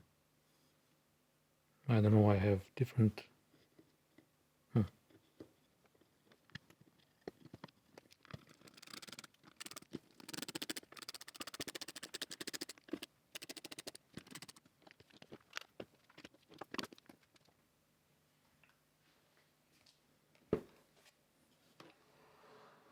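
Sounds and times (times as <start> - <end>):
rapid clicking: 8.2 - 14.6.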